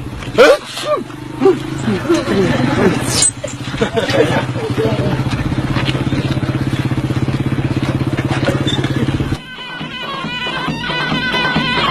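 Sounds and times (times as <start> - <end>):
engine running with fast pulse: 0.0 - 11.9
music: 8.8 - 11.9.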